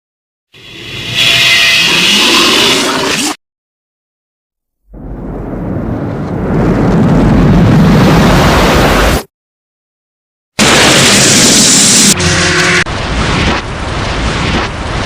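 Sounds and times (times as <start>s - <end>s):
deep explosion-like rumbling: 4.9s - 9.3s.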